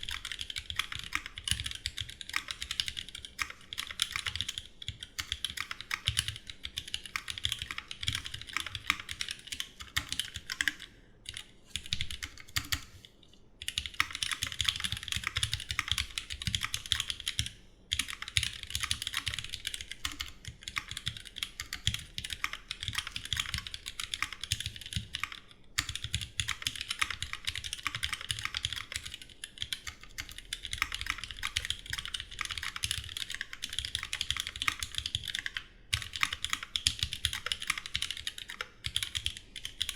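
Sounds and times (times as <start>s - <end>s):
fast mechanical keyboard typing: 0.0s - 12.9s, 13.6s - 39.9s.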